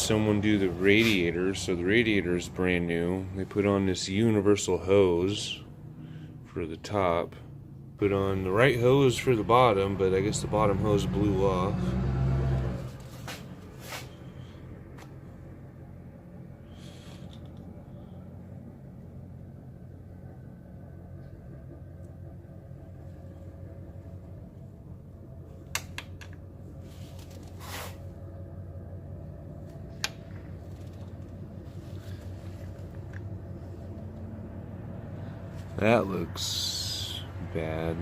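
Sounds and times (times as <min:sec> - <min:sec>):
low mechanical hum: 0:00.0 - 0:38.0.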